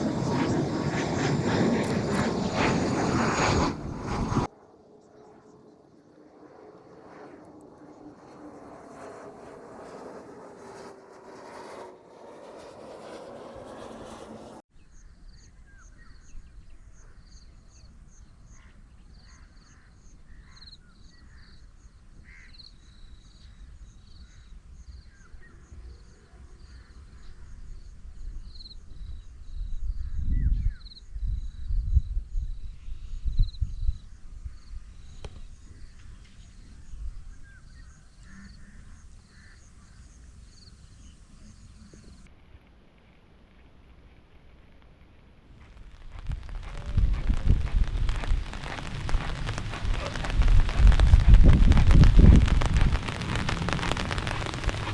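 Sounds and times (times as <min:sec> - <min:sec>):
wind on microphone: 0:00.0 - 0:04.5, 0:27.3 - 0:37.6, 0:45.6 - 0:54.9
dense rushing noise: 0:01.8 - 0:04.5, 0:45.6 - 0:54.9
birds calling: 0:45.6 - 0:54.9.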